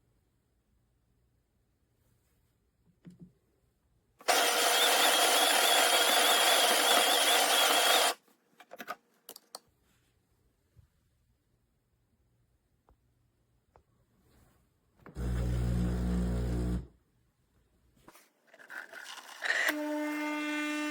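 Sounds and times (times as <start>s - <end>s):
espresso machine motor: 4.2s - 8.2s, 15.2s - 16.9s.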